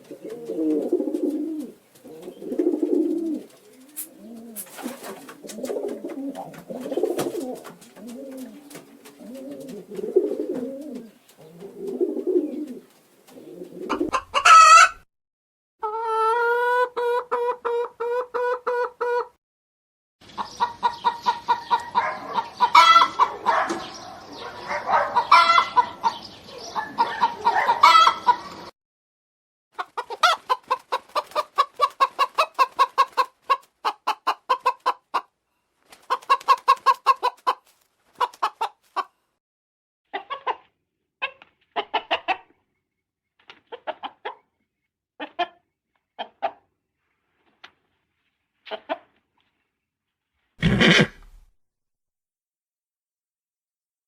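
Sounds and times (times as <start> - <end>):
pigeons cooing: 0.0 - 14.2
hens clucking: 0.0 - 15.0, 15.8 - 19.3, 20.3 - 23.8, 24.9 - 28.7, 29.8 - 35.3, 36.0 - 39.1, 40.1 - 42.6, 43.6 - 44.4, 45.2 - 45.6, 46.2 - 46.7.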